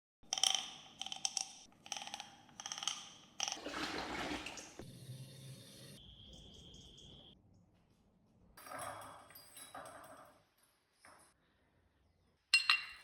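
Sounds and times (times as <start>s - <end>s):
running water: 3.5s - 4.9s
ceramic ware clinking: 12.5s - 13.0s.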